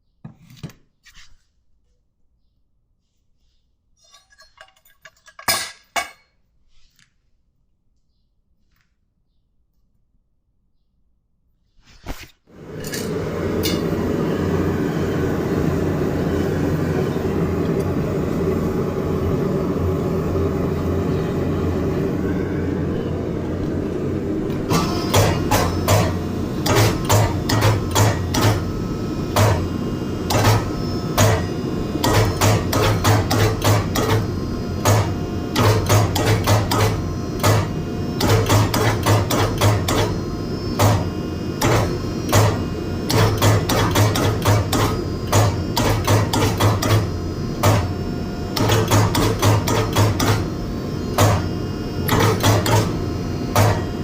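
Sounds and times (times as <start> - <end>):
low hum: 12.5 - 35.6.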